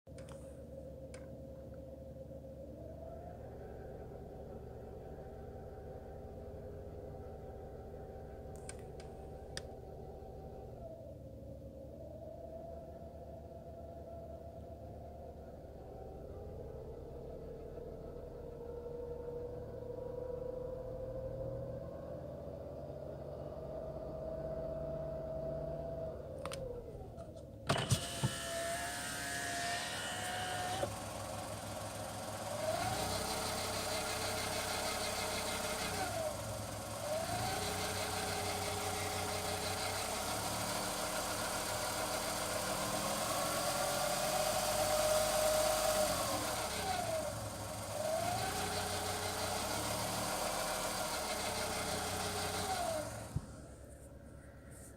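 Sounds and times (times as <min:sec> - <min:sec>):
car engine running: 0:26.9 - 0:54.9.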